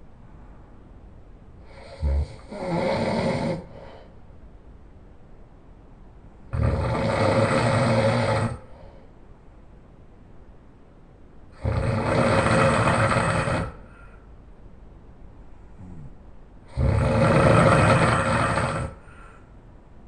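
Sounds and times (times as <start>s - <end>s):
person snoring loudly: 1.6s - 3.8s, 6.5s - 8.8s, 11.6s - 14.1s, 15.8s - 19.3s.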